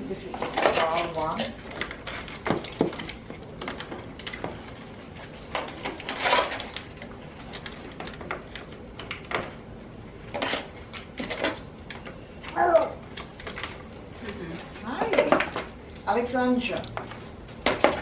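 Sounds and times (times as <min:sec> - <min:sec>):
snack packs knocking and rustling: 0:00.4 - 0:09.7, 0:16.9 - 0:18.0.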